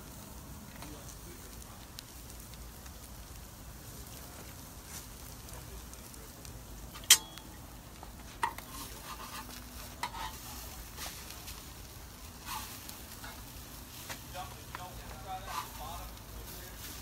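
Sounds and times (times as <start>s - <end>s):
food sizzling: 0.0s - 17.0s
metal utensil clanking and scraping: 6.9s - 7.4s, 8.4s - 10.6s, 12.4s - 13.4s, 15.4s - 15.8s.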